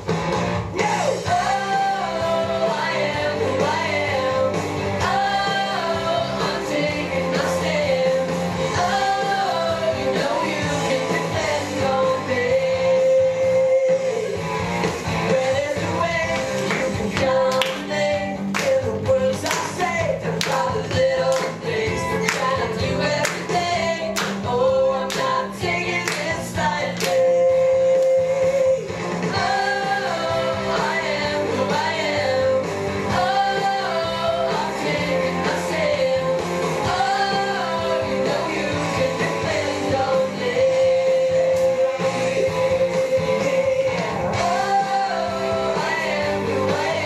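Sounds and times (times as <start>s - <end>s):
singing with instrumental accompaniment: 0.0s - 47.0s.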